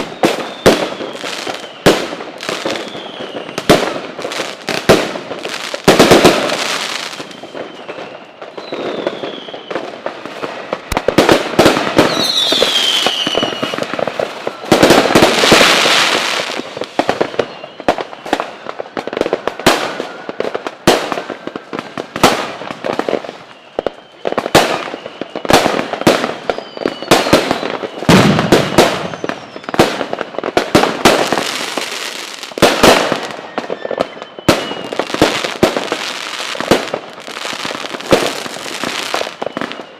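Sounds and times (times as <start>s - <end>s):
whistles falling in pitch: 0.0s - 1.9s, 7.1s - 9.8s, 12.0s - 13.8s, 23.4s - 25.7s, 26.4s - 29.8s, 33.4s - 35.4s, 39.1s - 39.9s
fireworks bangs: 0.0s - 39.9s
fireworks crackling: 0.0s - 39.9s.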